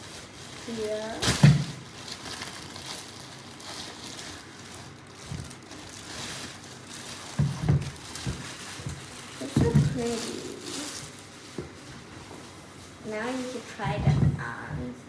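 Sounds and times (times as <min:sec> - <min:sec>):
cardboard box packaging rustling: 0:00.0 - 0:14.0
soft bumps: 0:07.3 - 0:10.2.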